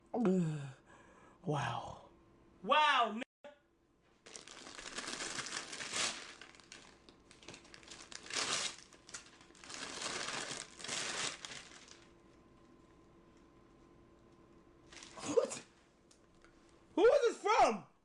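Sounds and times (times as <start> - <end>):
gift packaging crinkling and tearing: 4.2 - 12.1, 14.9 - 15.6.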